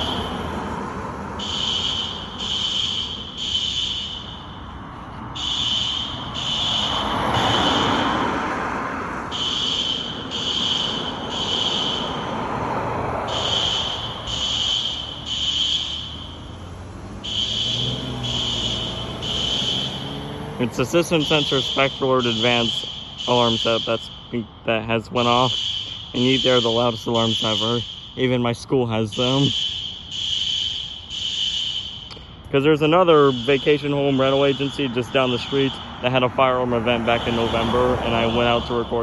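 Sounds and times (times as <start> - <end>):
fire alarm horn beeps: 0.0 - 0.5, 1.4 - 4.7, 5.4 - 8.2, 9.3 - 12.3, 13.3 - 16.5, 17.2 - 24.3, 25.2 - 32.1, 32.7 - 36.2.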